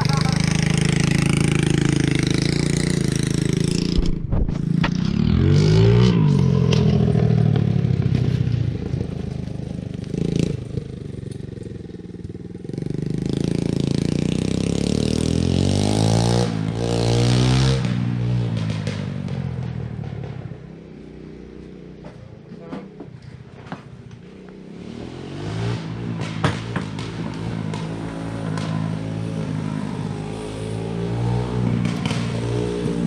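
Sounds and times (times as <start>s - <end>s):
small engine revving: 0.0s - 8.3s.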